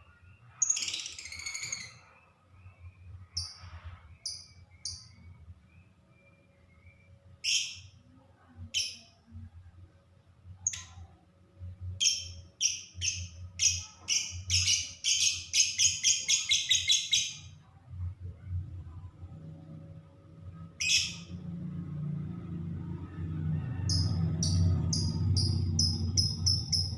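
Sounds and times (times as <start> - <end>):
lovebird chirping: 0.0 - 7.9, 12.0 - 17.5, 20.8 - 21.3, 23.9 - 26.9.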